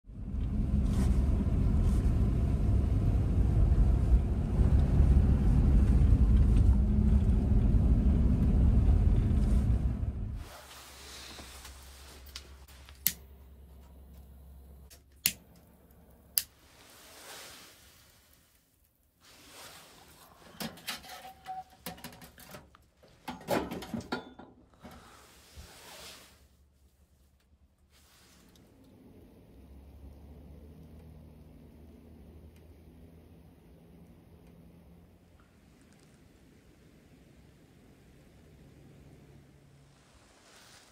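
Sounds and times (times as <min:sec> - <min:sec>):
vehicle engine rumble: 0:00.0 - 0:18.0, 0:28.0 - 0:40.9.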